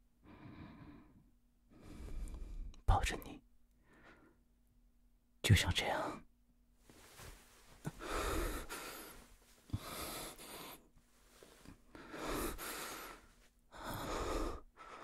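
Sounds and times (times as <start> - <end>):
man breathing heavily: 0.2 - 2.7, 7.0 - 15.0.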